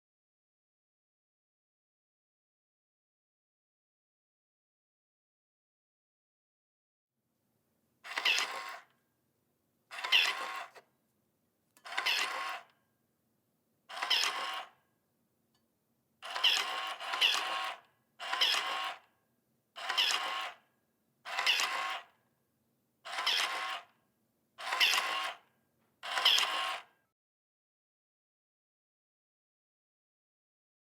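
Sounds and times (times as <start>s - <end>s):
soap dispenser pump motor: 8.1s - 8.9s, 9.9s - 10.8s, 11.8s - 12.7s, 13.9s - 14.7s, 16.2s - 19.1s, 19.8s - 20.6s, 21.3s - 22.1s, 23.1s - 23.9s, 24.6s - 25.4s, 26.0s - 26.9s.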